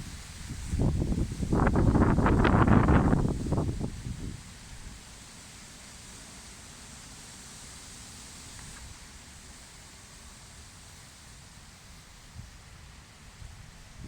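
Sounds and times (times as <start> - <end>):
wind rumble on microphone: 0.0 - 5.0, 13.4 - 14.0
wind rustling grass: 0.0 - 14.0.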